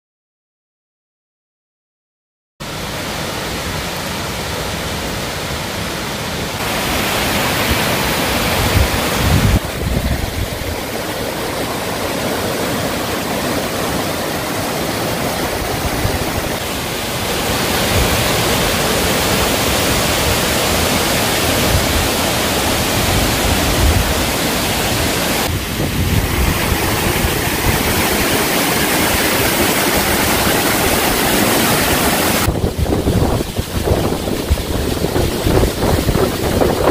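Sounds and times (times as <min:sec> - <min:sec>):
waterfall pouring: 0:06.5 - 0:36.9
wind rumble on microphone: 0:08.4 - 0:11.0, 0:15.2 - 0:16.6, 0:21.6 - 0:36.9.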